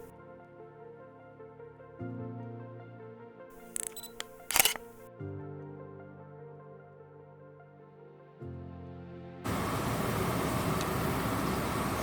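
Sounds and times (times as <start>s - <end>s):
soft music with held chords: 0.0s - 9.5s.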